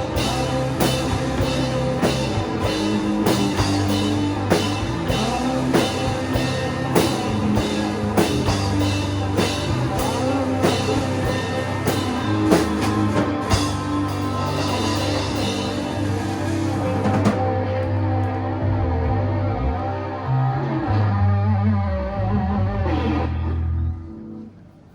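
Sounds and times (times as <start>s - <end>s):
drum kit beat: 0.0s - 17.5s
shoegaze rock band playing: 0.0s - 21.7s
guitars: 0.0s - 24.9s.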